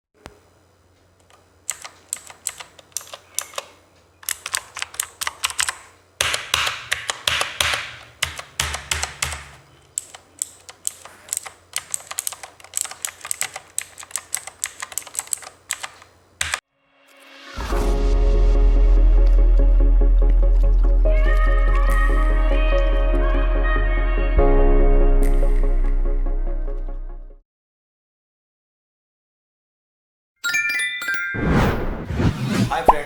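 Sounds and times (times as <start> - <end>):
mechanical keyboard typing: 1.2 - 16.6.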